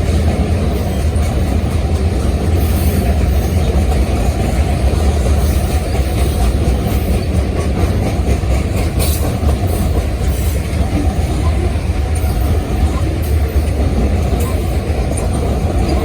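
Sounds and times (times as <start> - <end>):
freight train rumbling past: 0.0 - 16.0.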